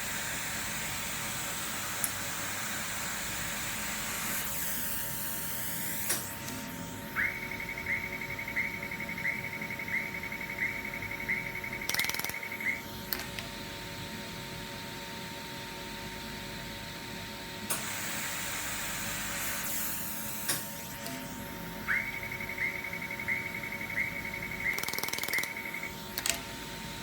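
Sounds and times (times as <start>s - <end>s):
welding machine humming: 0.0s - 7.2s, 17.7s - 27.0s
clicks: 13.1s - 13.5s, 24.7s - 26.5s.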